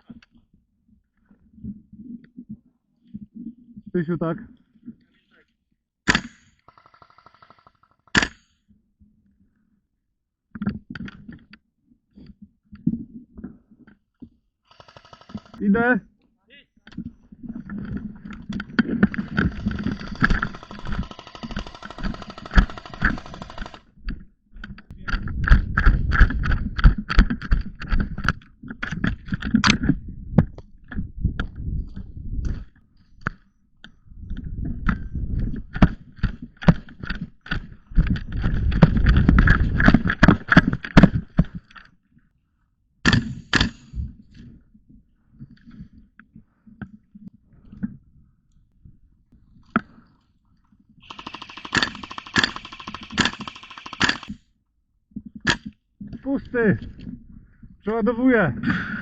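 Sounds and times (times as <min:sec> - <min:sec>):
airsoft rifle rapid fire: 0:14.7 - 0:15.6, 0:19.2 - 0:23.9, 0:51.0 - 0:54.4.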